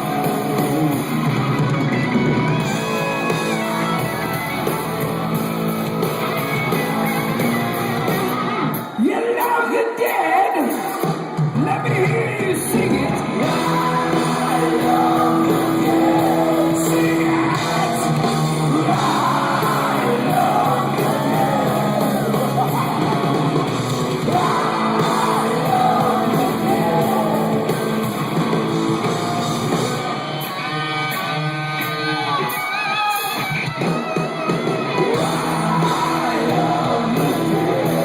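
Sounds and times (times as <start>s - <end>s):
live rock band playing: 0.0s - 9.0s, 10.7s - 38.0s
man singing and yelling: 8.9s - 28.8s, 30.4s - 38.0s.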